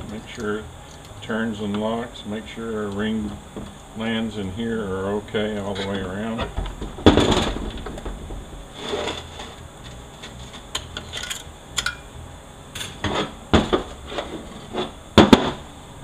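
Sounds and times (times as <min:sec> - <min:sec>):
metal parts clicking and clinking: 0:09.0 - 0:12.1.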